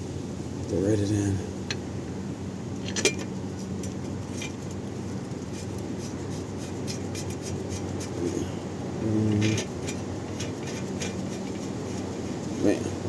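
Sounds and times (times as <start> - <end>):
steady low hum: 0.0 - 13.0
metallic clicks and scraping of bolts: 2.8 - 5.9, 9.3 - 12.1.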